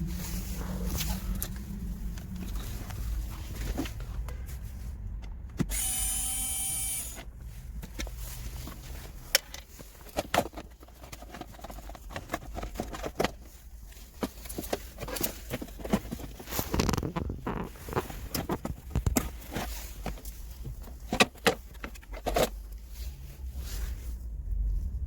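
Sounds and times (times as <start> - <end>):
small electric motor whirring: 5.7 - 7.2.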